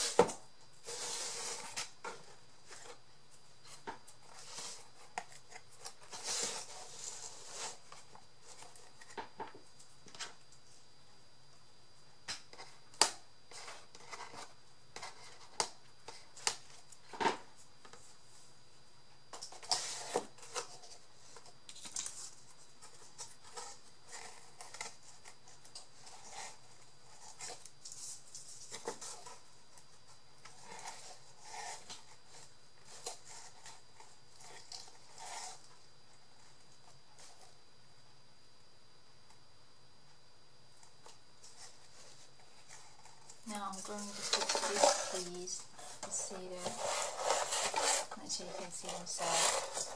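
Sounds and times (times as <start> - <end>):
paper rustling: 41.4 - 49.9.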